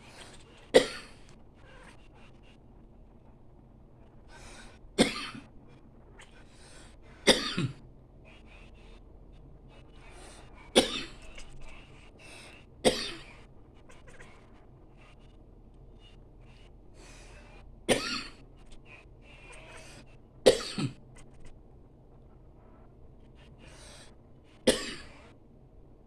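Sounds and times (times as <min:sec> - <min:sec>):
person coughing: 0:00.8 - 0:01.2, 0:05.0 - 0:05.4, 0:07.3 - 0:07.8, 0:10.8 - 0:11.2, 0:12.9 - 0:13.2, 0:17.9 - 0:18.4, 0:20.5 - 0:21.0, 0:24.7 - 0:25.2.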